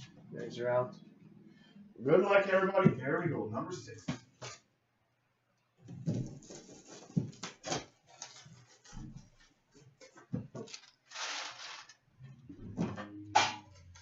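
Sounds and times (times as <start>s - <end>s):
crinkling rustle: 6.2s - 12.0s
packaging rustling and clicking: 10.6s - 12.0s.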